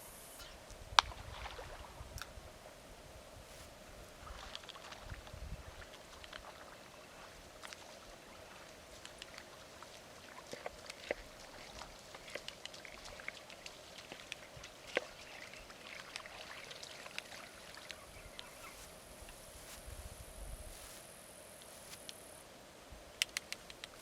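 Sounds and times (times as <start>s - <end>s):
faint steady background noise: 0.0s - 24.0s
water dripping and trickling: 7.5s - 18.5s.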